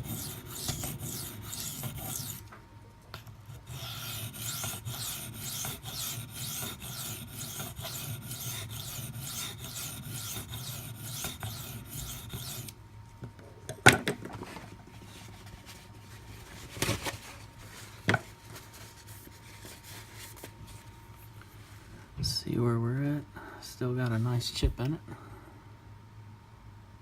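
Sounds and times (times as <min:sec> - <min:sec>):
knife grinding on sharpening stone: 0:00.0 - 0:02.4, 0:03.6 - 0:12.7.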